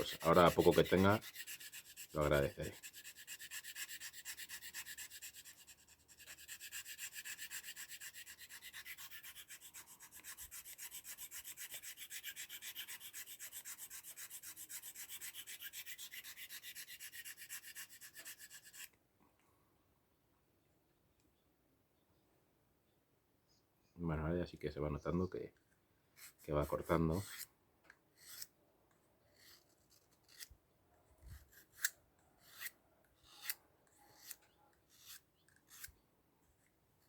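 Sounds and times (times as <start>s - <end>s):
knife scraping on sharpener: 0.0s - 18.9s, 26.2s - 27.5s, 28.2s - 28.5s, 29.3s - 30.5s, 31.3s - 36.0s.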